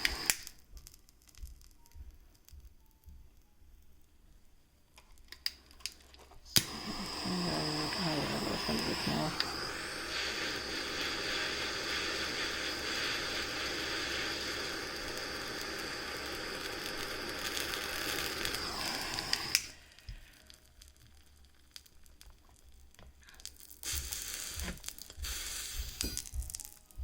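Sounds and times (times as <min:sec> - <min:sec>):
torch flame hissing: 0:00.0 - 0:02.6, 0:05.1 - 0:27.0
small parts clicking and tapping: 0:05.0 - 0:06.7.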